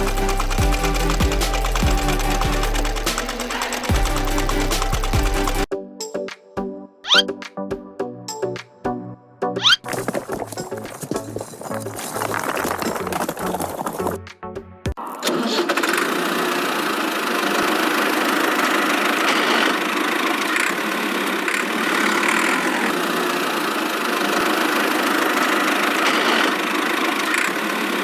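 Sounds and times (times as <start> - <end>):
toy motor droning: 0.0 - 5.7, 15.3 - 28.0.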